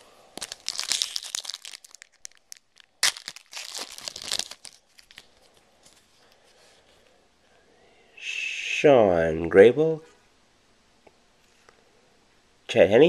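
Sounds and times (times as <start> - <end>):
wrapper snapping: 0.3 - 5.6
card pack wrapper tearing and crinkling: 0.4 - 5.6.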